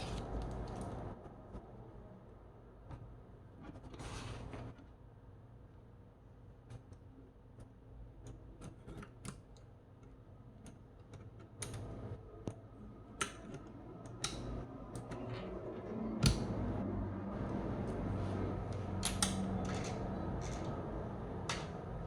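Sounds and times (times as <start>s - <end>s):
low steady hum: 9.5s - 22.0s.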